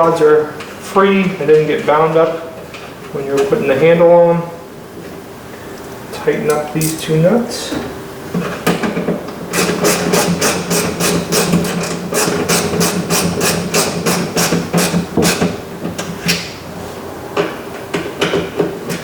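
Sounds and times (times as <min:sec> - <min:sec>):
ratchet clicking: 0:09.5 - 0:15.5.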